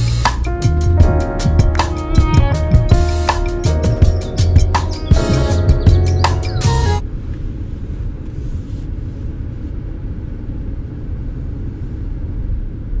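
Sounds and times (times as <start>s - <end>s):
music: 0.0s - 7.0s.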